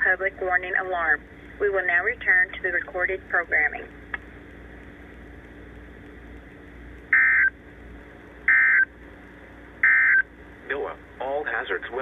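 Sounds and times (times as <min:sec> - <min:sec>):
radio hiss: 0:09.8 - 0:12.0.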